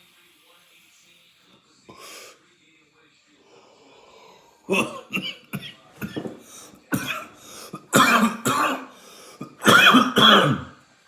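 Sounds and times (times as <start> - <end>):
man clearing throat: 4.7 - 10.7
man coughing hard: 4.7 - 10.7.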